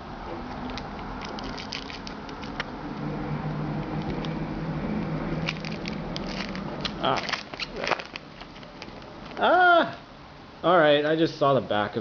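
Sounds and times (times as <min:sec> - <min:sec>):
trading cards rustling and clicking: 0:00.7 - 0:02.7, 0:05.4 - 0:09.4.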